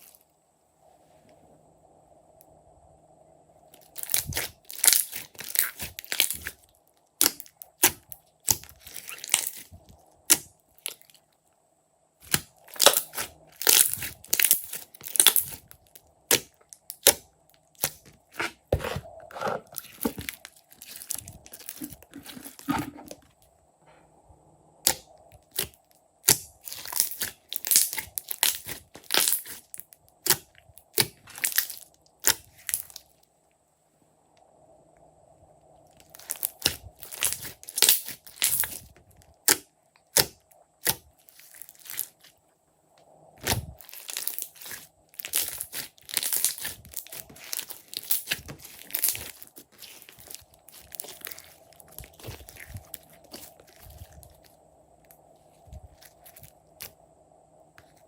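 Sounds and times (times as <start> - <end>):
slime crackling and popping: 3.8 - 11.2, 12.2 - 18.5, 19.7 - 22.8, 24.9 - 33.0, 36.1 - 42.3, 43.4 - 54.5.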